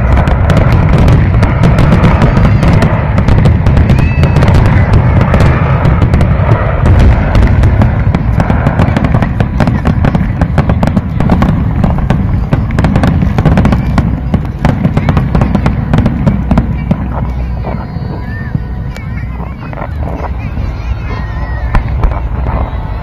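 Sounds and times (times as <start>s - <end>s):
fireworks bangs and crackles: 0.0s - 23.0s.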